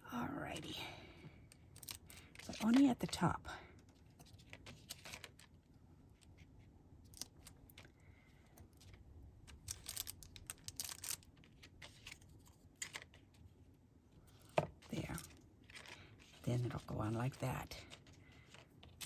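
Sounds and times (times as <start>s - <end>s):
hands rustling paper pieces: 8.8s - 13.3s, 15.0s - 16.8s.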